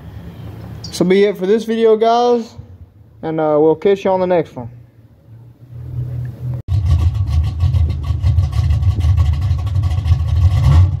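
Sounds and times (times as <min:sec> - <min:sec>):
car engine idling: 0:05.8 - 0:10.7.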